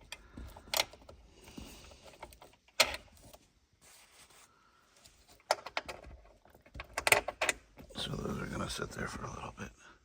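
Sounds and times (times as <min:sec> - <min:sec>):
small parts handled and set down: 0:00.0 - 0:03.5, 0:05.0 - 0:07.9.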